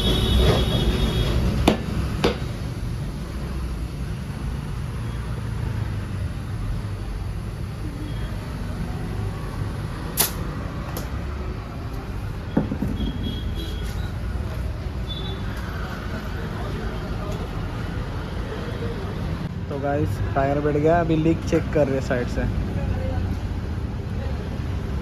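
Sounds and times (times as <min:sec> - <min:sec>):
sharp clicks and knocks: 0:01.6 - 0:02.6.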